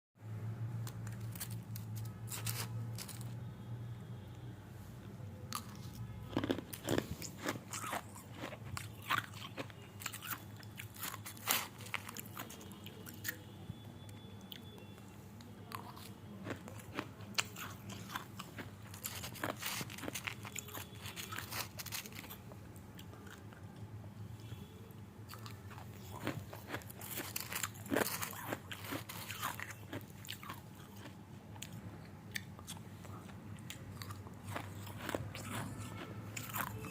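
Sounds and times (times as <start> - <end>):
crunching and sharp clicks: 0.8 - 3.4, 5.5 - 13.4, 15.7 - 22.4, 25.3 - 36.9.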